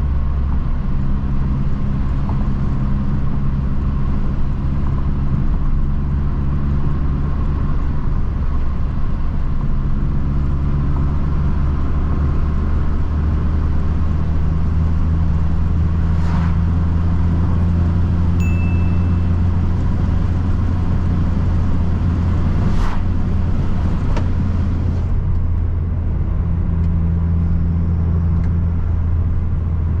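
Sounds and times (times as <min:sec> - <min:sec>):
brief high beep: 0:18.4 - 0:19.7.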